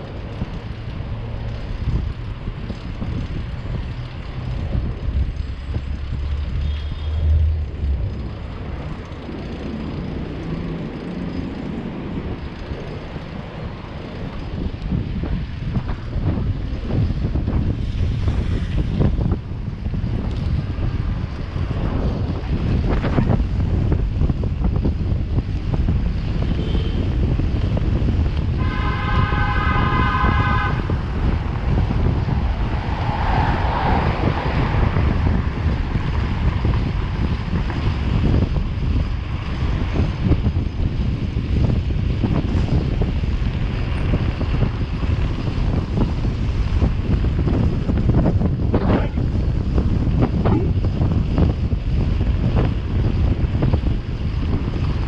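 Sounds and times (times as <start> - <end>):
wind buffeting microphone: 0.0 - 55.0
horn: 28.6 - 31.0.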